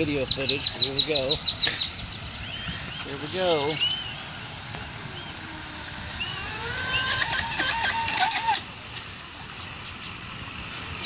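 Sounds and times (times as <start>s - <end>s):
faint birds chirping: 0.0s - 7.3s, 9.4s - 11.0s
water spray hissing: 0.0s - 11.0s
electric motor and propeller whine: 1.5s - 11.0s.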